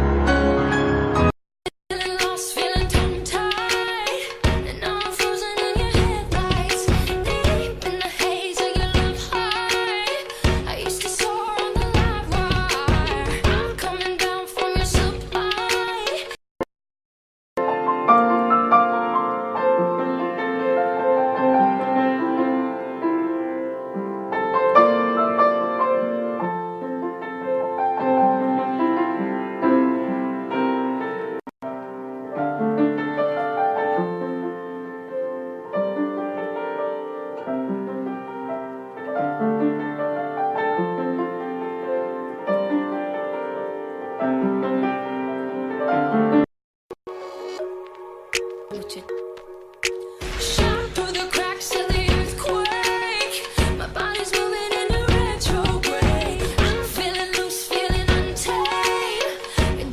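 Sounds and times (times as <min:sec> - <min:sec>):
instrumental piano music: 0:17.6 - 0:46.5.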